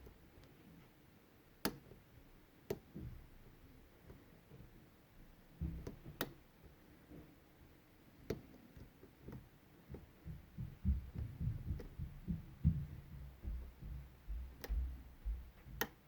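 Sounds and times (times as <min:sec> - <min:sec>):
soft low knocks: 0:10.0 - 0:15.9.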